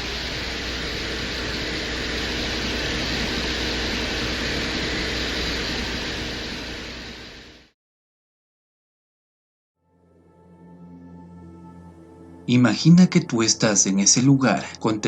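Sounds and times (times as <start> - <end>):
low hum: 0.0 - 7.7
rushing hiss: 0.0 - 7.7.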